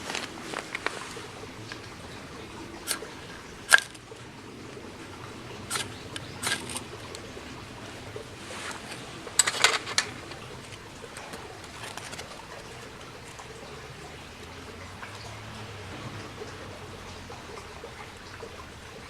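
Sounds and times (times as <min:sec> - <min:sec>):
firewood cracking and snapping: 0:08.6 - 0:13.4.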